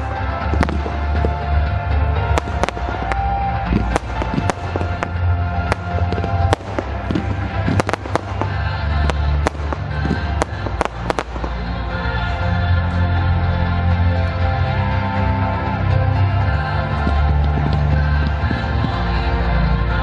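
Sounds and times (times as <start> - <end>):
fireworks bangs: 0.0 - 12.3
loud music with heavy bass: 0.0 - 20.0.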